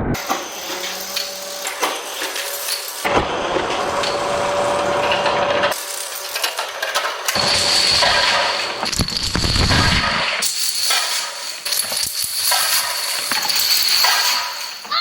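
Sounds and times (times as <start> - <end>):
marbles clattering through plastic run: 5.7 - 15.0.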